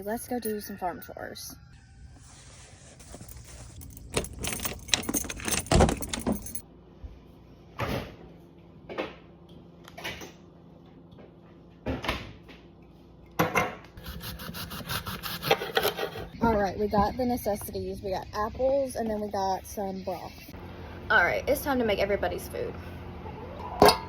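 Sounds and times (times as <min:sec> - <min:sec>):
jangling clattering rattles: 0:02.8 - 0:06.6.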